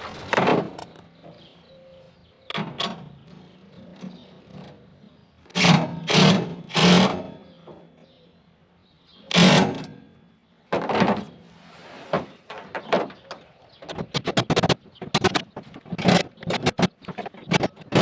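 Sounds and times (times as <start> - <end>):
power drill driving fasteners: 5.5 - 7.3.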